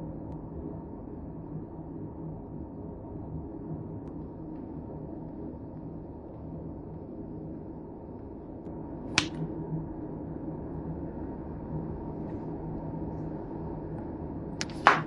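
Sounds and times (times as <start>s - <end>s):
steady low hum: 0.0s - 15.0s
clicks handling phone packaging: 14.6s - 15.0s.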